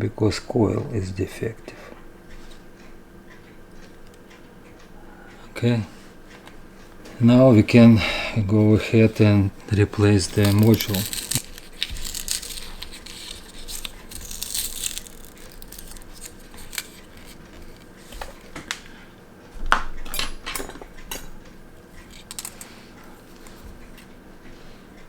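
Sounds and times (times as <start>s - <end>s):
rustling scrape: 10.2s - 18.4s
metallic clicks of watch tools: 22.0s - 22.8s.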